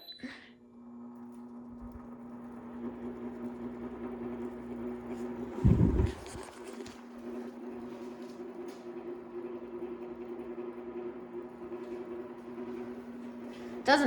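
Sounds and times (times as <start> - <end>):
box fan motor hum: 0.6 - 14.0
fan air noise: 0.6 - 14.0
loud low rumble: 5.6 - 6.5.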